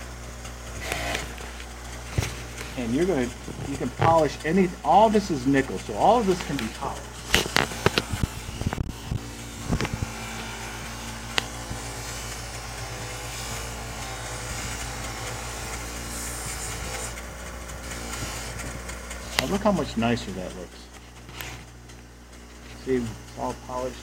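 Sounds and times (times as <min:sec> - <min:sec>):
electric polishing tool running: 0:00.0 - 0:24.0.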